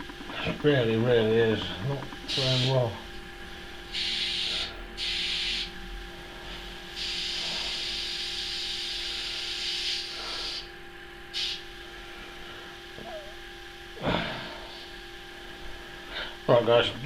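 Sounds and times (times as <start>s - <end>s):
compressed air hissing out: 11.3s - 11.6s.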